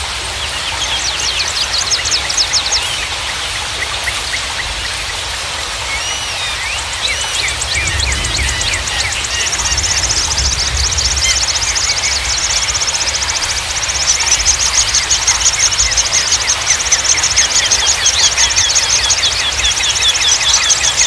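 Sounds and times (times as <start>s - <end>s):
songbirds trilling: 0.0s - 21.0s
water rushing: 0.0s - 21.0s
bird chirps: 5.8s - 21.0s.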